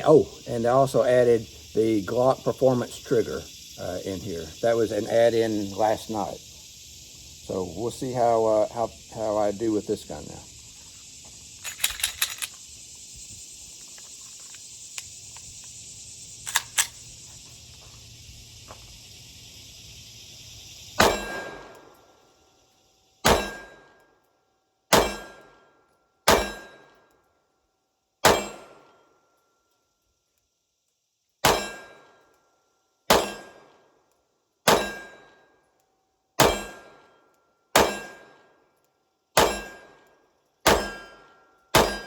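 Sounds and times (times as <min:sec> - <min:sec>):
steady hiss: 0:00.0 - 0:27.3
metallic gun handling clicks: 0:11.6 - 0:12.6, 0:16.4 - 0:17.0
pistol shots: 0:21.0 - 0:21.7, 0:23.2 - 0:23.8, 0:24.9 - 0:25.5, 0:26.3 - 0:26.8, 0:28.2 - 0:28.9, 0:31.4 - 0:32.0, 0:33.1 - 0:33.7, 0:34.7 - 0:35.2, 0:36.4 - 0:37.0, 0:37.8 - 0:38.4, 0:39.4 - 0:40.0, 0:40.6 - 0:41.2, 0:41.8 - 0:42.0.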